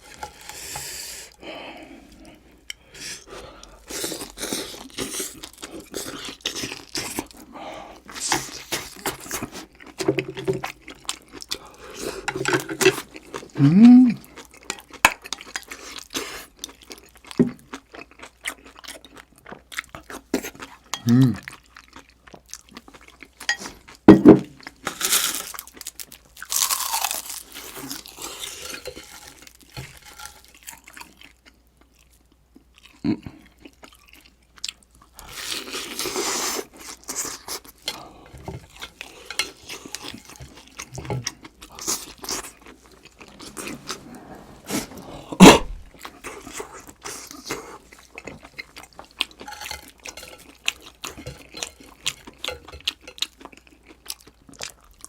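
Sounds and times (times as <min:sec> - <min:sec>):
wet chewing and crunching: 0:03.8 - 0:44.3, 0:44.9 - 0:55.0.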